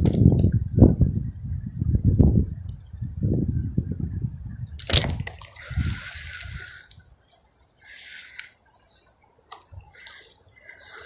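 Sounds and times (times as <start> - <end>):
wind rumble on microphone: 0.0 - 7.2
fish thrashing at surface: 4.8 - 6.6
water splashing and sloshing: 4.8 - 11.0.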